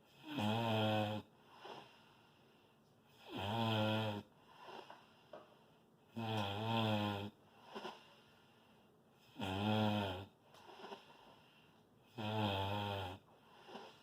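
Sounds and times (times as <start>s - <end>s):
loud snoring: 0.1s - 2.0s, 3.2s - 4.9s, 6.1s - 8.1s, 9.2s - 11.1s, 12.1s - 14.0s.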